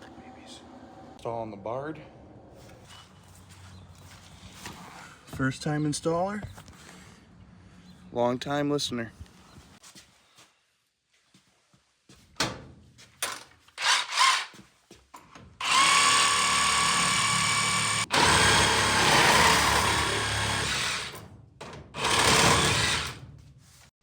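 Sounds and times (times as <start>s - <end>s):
power drill running: 13.8s - 14.6s, 15.6s - 21.2s, 22.0s - 23.2s.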